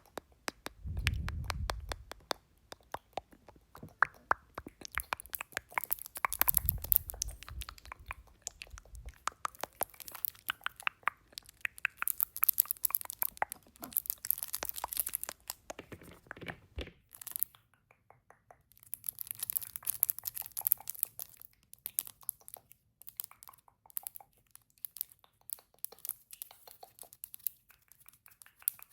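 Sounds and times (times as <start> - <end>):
rapid clicks and taps: 0.0 - 28.9
crinkling scratchy rustling: 4.6 - 17.5, 18.8 - 24.2.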